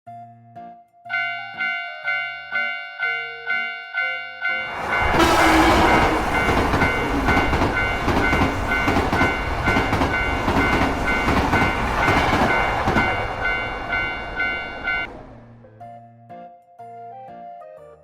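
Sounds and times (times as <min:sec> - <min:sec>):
railway crossing bell clanging: 0:01.1 - 0:15.1
train rumbling past: 0:03.5 - 0:15.5.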